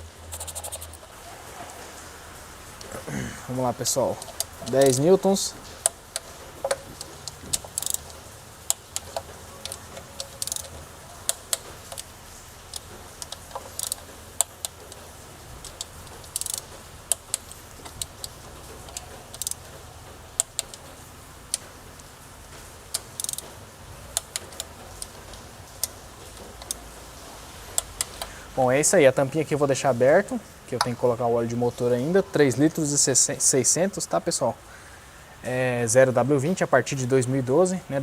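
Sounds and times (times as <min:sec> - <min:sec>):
torque wrench ratcheting: 0:00.2 - 0:01.1, 0:04.1 - 0:21.7, 0:22.9 - 0:26.8.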